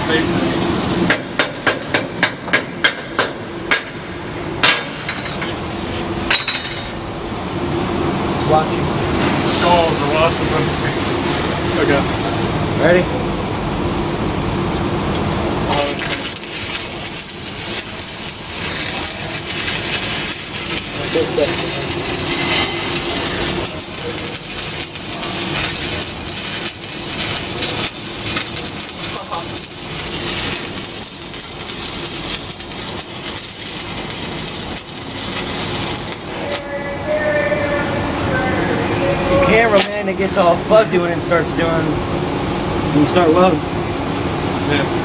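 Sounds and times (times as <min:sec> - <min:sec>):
welding arc crackling: 0:00.0 - 0:02.4, 0:09.5 - 0:12.6, 0:15.6 - 0:36.6
steady hum: 0:00.0 - 0:45.0.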